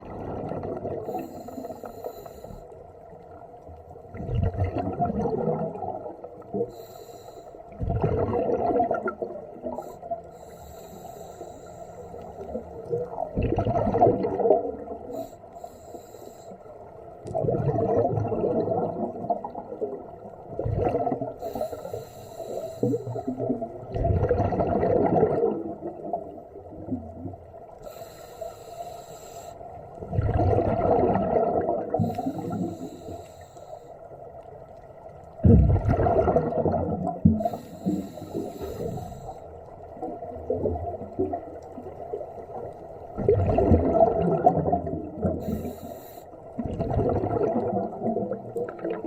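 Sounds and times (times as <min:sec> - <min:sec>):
diver exhaling bubbles underwater: 0:00.0 - 0:01.7, 0:04.1 - 0:06.7, 0:07.8 - 0:09.8, 0:12.8 - 0:15.1, 0:17.3 - 0:21.4, 0:22.8 - 0:27.4, 0:30.0 - 0:33.0, 0:35.4 - 0:39.3, 0:40.0 - 0:45.8, 0:46.6 - 0:49.0.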